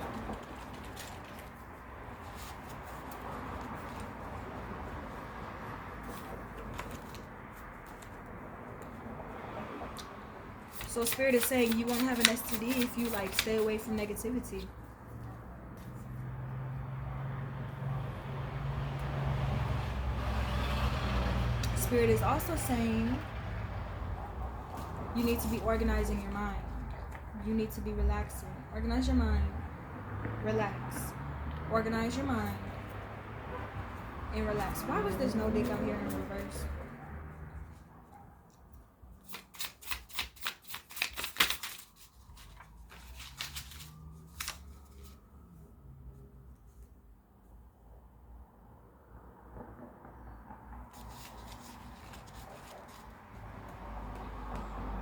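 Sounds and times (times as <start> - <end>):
vehicle engine humming: 0.0 - 37.8
cards being shuffled: 10.7 - 14.0, 39.3 - 45.1, 50.9 - 53.1.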